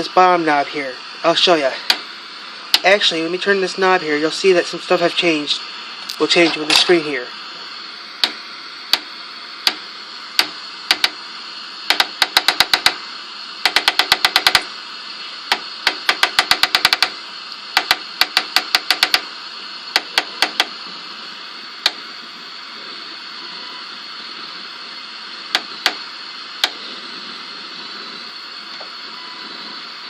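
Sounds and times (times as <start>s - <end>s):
tv static hiss: 0.0s - 30.0s
channel knob clicking: 10.4s - 11.2s.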